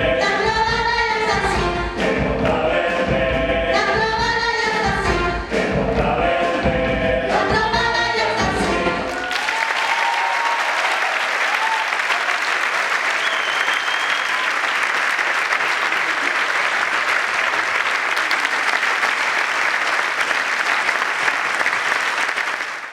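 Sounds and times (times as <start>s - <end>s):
choir singing to music: 0.0s - 9.1s
audience applauding: 9.1s - 22.9s.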